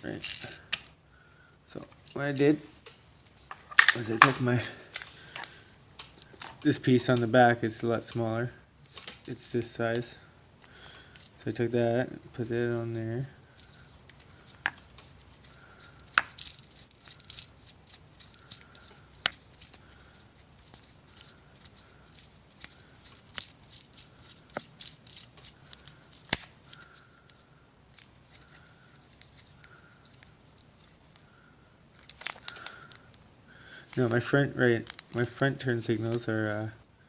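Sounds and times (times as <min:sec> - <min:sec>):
small hard parts clicking and clinking: 0:00.1 - 0:00.9, 0:03.5 - 0:06.7, 0:09.9 - 0:12.2, 0:13.5 - 0:31.2, 0:31.9 - 0:33.2, 0:33.9 - 0:35.3.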